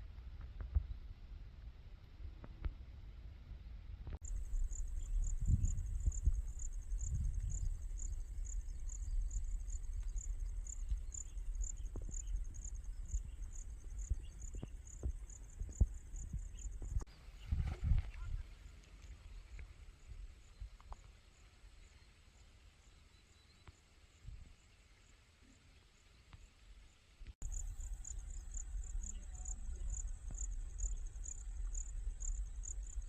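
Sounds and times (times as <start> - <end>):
insect chirping: 4.2 - 17.1, 24.5 - 33.0.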